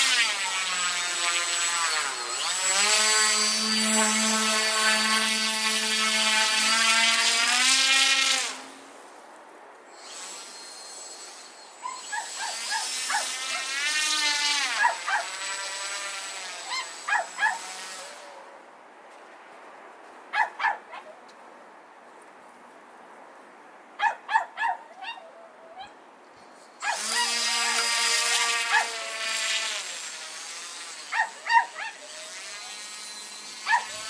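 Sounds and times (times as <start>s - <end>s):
small electric motor whining: 0.0s - 8.8s, 9.9s - 18.5s, 26.3s - 34.0s.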